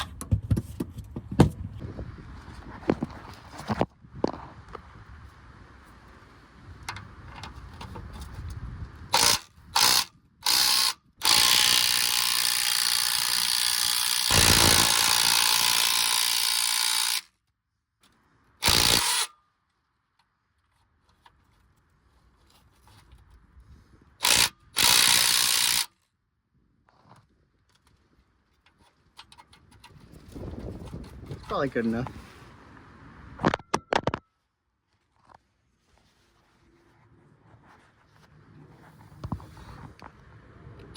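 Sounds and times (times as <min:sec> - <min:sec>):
power tool whirring: 0:09.1 - 0:17.3, 0:18.6 - 0:19.3, 0:24.2 - 0:25.9.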